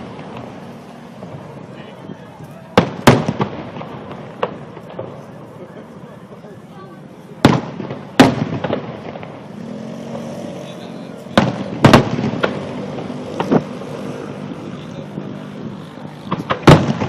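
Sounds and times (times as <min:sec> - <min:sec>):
fireworks bursting: 0:00.0 - 0:17.0.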